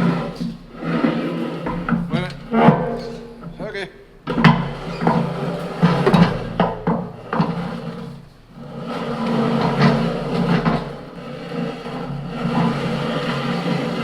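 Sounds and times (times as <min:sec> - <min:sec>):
steady low hum: 0:00.0 - 0:14.0
sharp knocks and clunks: 0:04.2 - 0:07.8.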